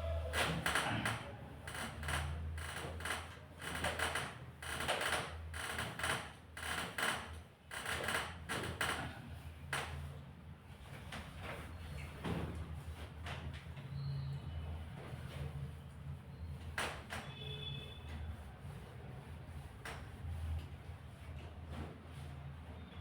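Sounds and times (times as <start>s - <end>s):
treatment table creaking: 0.4s - 9.9s.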